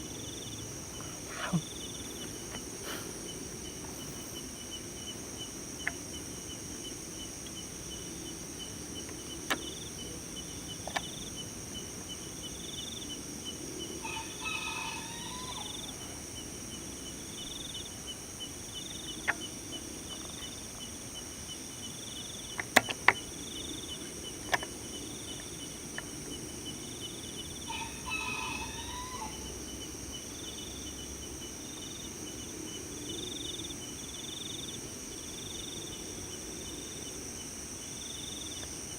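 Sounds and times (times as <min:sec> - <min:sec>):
cricket trill: 0:00.0 - 0:38.9
high-pitched insect buzz: 0:00.1 - 0:07.7, 0:27.2 - 0:32.5.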